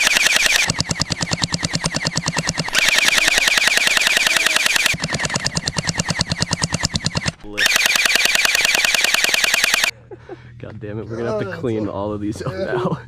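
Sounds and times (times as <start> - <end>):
motor whine: 0.0 - 0.7, 2.7 - 5.0, 7.6 - 9.9
toy blasters firing rapidly: 0.0 - 5.0, 7.5 - 9.9.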